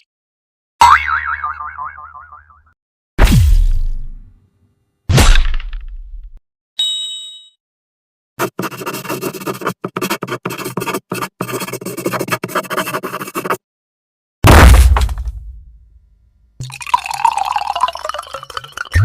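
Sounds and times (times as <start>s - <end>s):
cartoon thud: 3.2s - 4.2s, 5.1s - 5.9s, 14.4s - 15.8s
choppy scratching: 8.4s - 13.6s.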